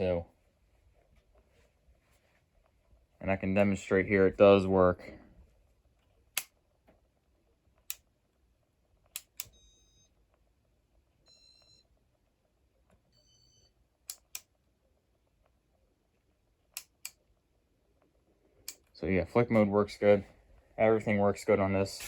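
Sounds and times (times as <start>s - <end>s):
sharp switch clicks: 9.1s - 9.5s, 14.1s - 14.5s, 16.7s - 17.2s.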